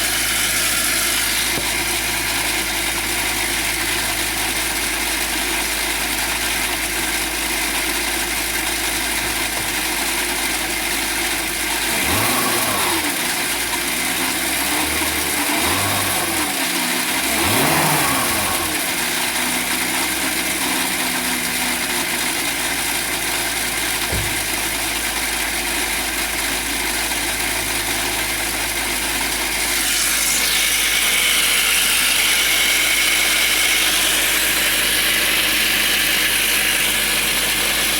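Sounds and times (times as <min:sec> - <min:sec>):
car engine idling and revving: 0:00.0 - 0:37.9.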